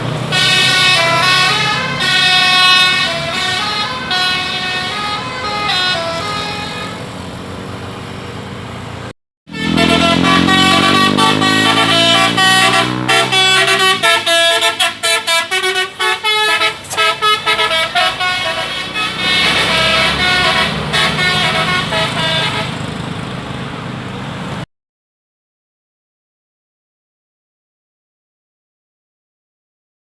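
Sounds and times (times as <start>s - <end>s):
musical air horn tune: 0.3s - 7.1s, 9.5s - 22.8s.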